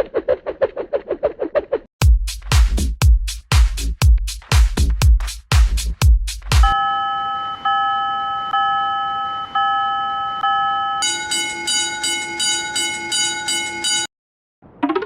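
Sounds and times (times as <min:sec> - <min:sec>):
railroad crossing bell ringing: 0:06.7 - 0:14.1.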